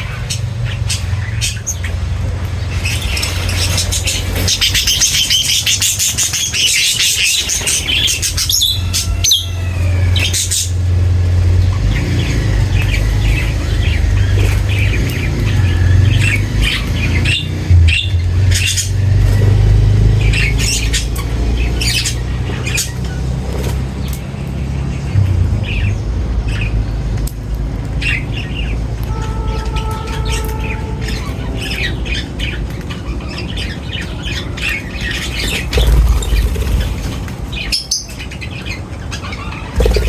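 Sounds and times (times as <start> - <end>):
small birds chirping: 0.0 - 40.0
steady low rumble: 10.1 - 21.7, 23.0 - 28.0.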